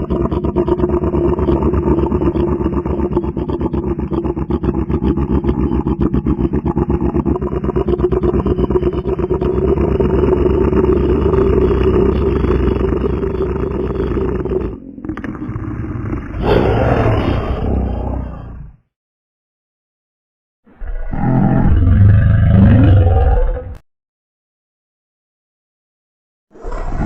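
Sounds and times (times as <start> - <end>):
hippopotamus growling: 0.0 - 18.8.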